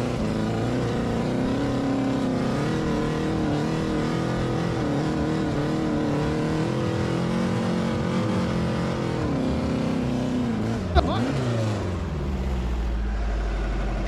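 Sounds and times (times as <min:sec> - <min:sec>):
engine running hard: 0:00.0 - 0:14.0.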